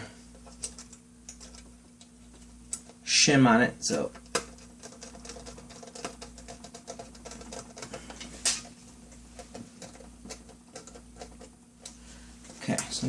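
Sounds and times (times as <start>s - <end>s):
faint steady hum: 0.0s - 13.0s
laptop parts clicking: 3.9s - 8.7s, 9.4s - 12.0s.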